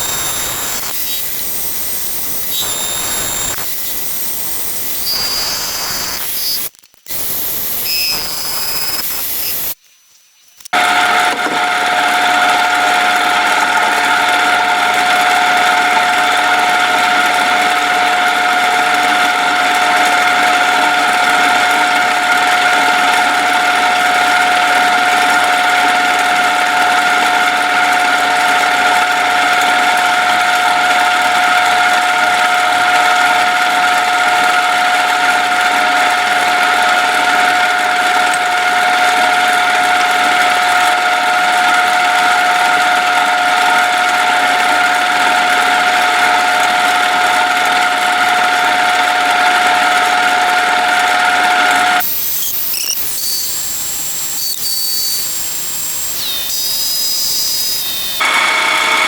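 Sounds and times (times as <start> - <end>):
milling machine whine: 0.0 - 9.8, 10.4 - 59.0.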